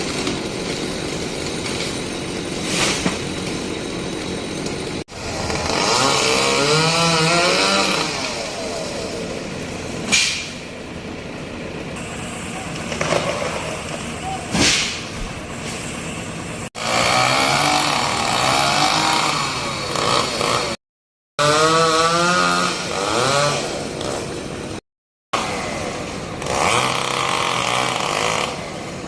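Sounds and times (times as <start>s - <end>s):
chainsaw cutting wood: 0.0s - 10.6s, 16.8s - 20.8s, 21.4s - 24.7s, 25.4s - 29.0s.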